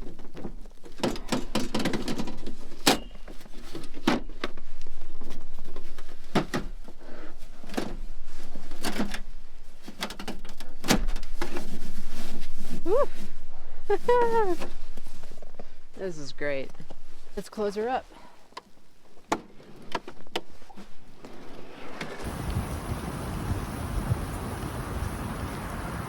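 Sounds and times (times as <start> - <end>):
cooking gear knocking and rattling: 0.0 - 4.6.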